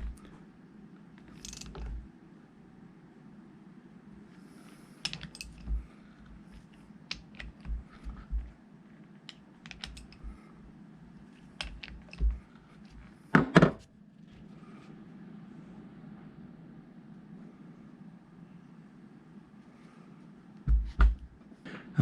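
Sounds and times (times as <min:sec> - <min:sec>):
metallic clicks of hand tools: 0:01.3 - 0:02.0, 0:05.0 - 0:05.8, 0:09.3 - 0:10.3.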